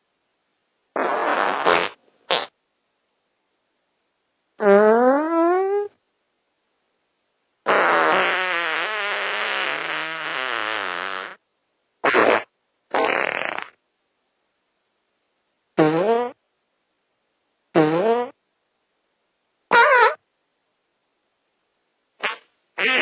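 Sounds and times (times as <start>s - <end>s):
fart sound effects: 1.0s - 2.5s, 4.6s - 5.9s, 7.7s - 11.4s, 12.0s - 13.8s, 15.8s - 16.4s, 17.8s - 18.4s, 19.7s - 20.2s, 22.2s - 23.0s.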